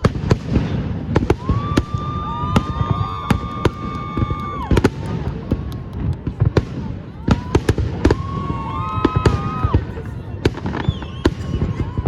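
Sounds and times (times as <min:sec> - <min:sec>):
fireworks bangs and pops: 0:00.0 - 0:12.0
fireworks whistle: 0:07.3 - 0:12.0.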